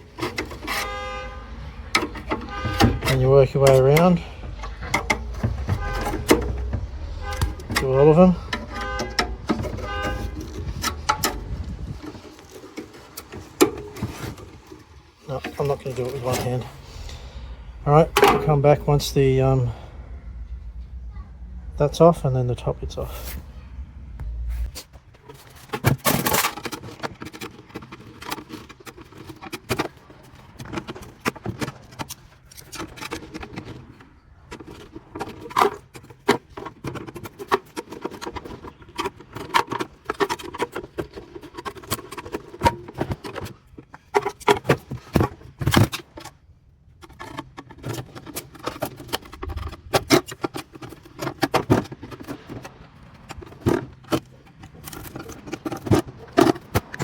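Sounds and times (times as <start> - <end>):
sharp metallic clicks and knocks: 0.0 - 14.8
hand tools scraping metal: 0.0 - 19.8.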